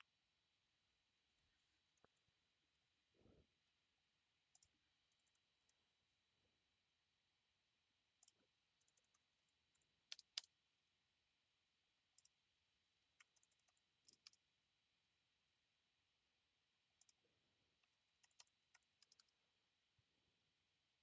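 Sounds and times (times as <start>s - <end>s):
computer mouse clicking: 4.5s - 5.8s, 8.2s - 10.5s, 12.2s - 12.4s, 13.2s - 14.4s, 17.0s - 17.2s, 17.8s - 19.4s.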